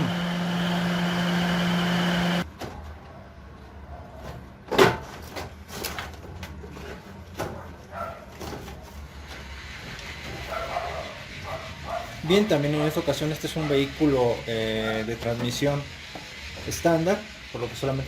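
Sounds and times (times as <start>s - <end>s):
cooling fan motor humming: 0.0s - 2.4s.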